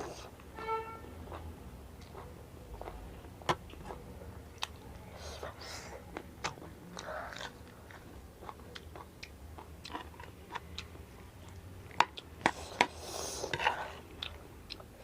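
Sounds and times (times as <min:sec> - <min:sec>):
chewing crunchy snack: 0:04.6 - 0:15.0.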